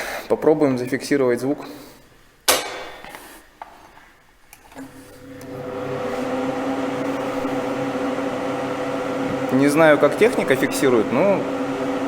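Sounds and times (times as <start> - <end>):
duct fan motor hum: 4.8 - 12.0.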